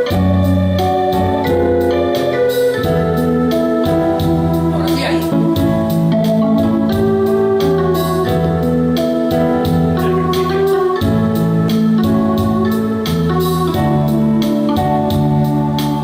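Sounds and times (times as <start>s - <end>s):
electronic organ chords: 0.0s - 16.0s
steady drum beat: 4.2s - 6.1s.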